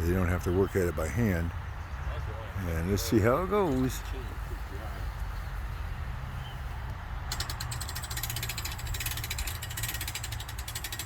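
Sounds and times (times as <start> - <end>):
winch ratchet clicking: 7.3 - 11.0.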